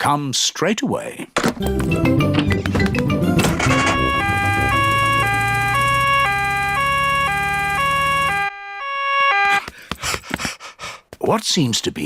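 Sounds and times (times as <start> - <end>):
low vehicle rumble: 3.2 - 8.4
two-tone emergency siren: 3.4 - 9.7.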